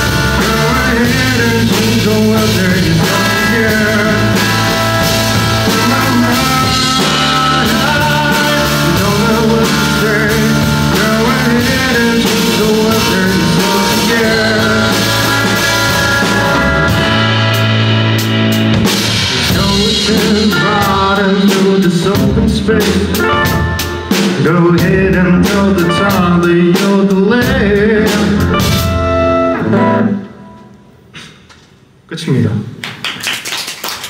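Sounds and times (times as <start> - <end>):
electric guitar: 0.0 - 26.3
rock band playing live: 0.0 - 31.5.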